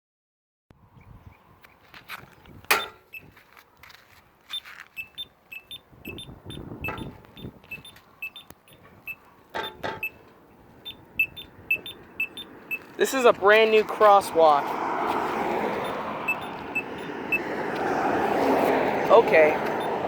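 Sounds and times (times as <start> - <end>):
crosswalk signal beeps: 2.7 - 3.4, 4.5 - 13.0, 15.7 - 17.5, 19.3 - 20.0.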